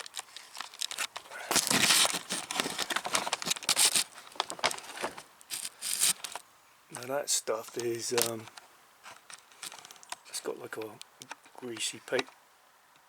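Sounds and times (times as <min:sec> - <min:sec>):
paper crinkling and rustling: 0:00.0 - 0:06.4, 0:07.0 - 0:10.1.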